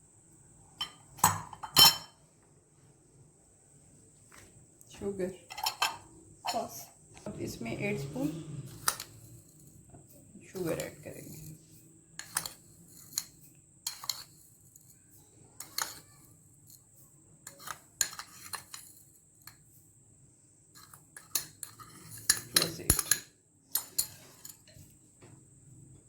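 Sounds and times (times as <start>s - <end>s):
metal spoon clinking on bowl: 0.8s - 2.2s, 5.5s - 6.8s, 8.2s - 9.8s, 10.6s - 19.7s, 20.8s - 24.9s.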